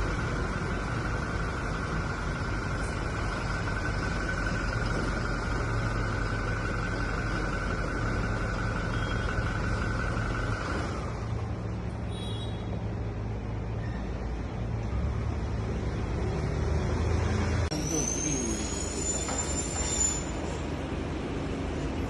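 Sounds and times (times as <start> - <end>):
engine humming: 0.0 - 22.0.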